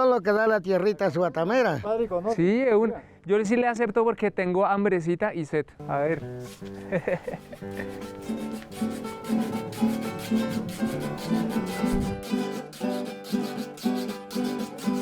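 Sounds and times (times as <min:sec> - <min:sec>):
scraped rhythm: 0:05.8 - 0:15.0
strummed and plucked strings: 0:05.8 - 0:15.0.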